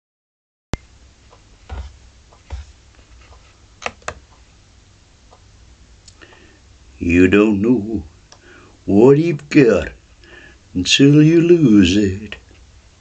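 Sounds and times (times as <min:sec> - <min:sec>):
soft thumps: 0:01.7 - 0:02.8.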